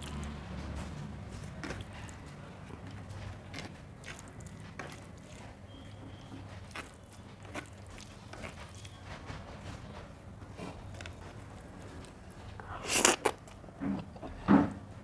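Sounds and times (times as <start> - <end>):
wet chewing: 0.0 - 15.0
soft mouth clicks: 12.6 - 14.4.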